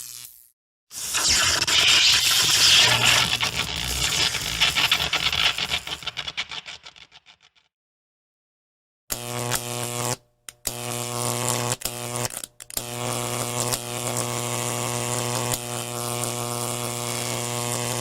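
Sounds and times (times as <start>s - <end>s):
loud electric buzz: 0.9s - 7.0s
crackling hiss: 1.0s - 6.8s.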